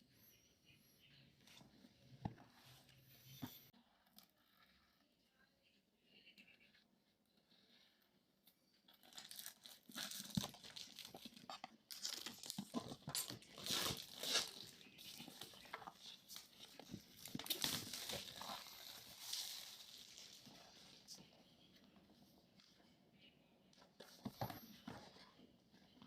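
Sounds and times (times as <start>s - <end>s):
packaging being torn and crinkled: 9.0s - 15.6s, 17.2s - 20.5s.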